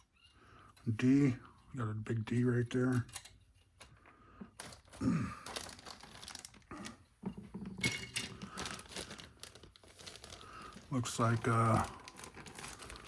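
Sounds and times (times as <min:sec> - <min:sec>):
plastic bag crinkling: 0:04.6 - 0:13.0.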